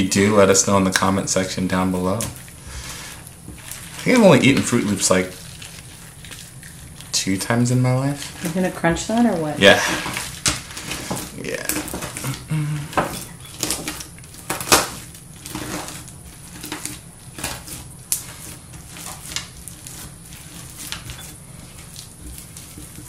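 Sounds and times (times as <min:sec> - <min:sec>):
cereal crunching in slime: 0:00.0 - 0:08.6, 0:13.2 - 0:23.0.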